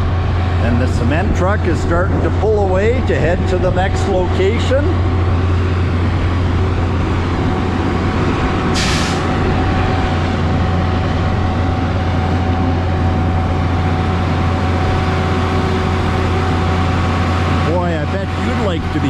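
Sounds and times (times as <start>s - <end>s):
diesel truck engine droning: 0.0s - 19.0s
air brake hiss: 8.8s - 9.3s.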